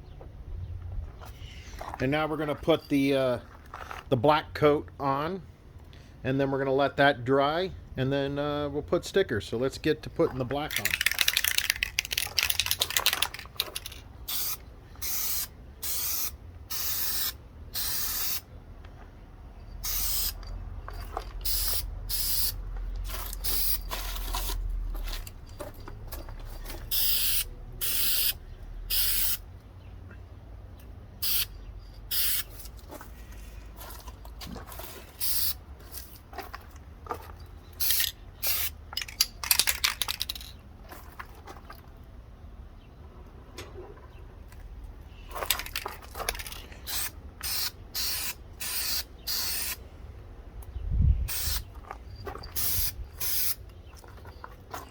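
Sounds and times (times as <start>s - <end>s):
spray paint can hissing: 10.7s - 18.5s, 19.8s - 20.4s, 21.4s - 24.7s, 26.8s - 29.4s, 31.2s - 32.8s, 34.8s - 36.1s, 37.8s - 38.8s, 45.5s - 49.8s, 51.3s - 51.7s, 52.5s - 53.6s.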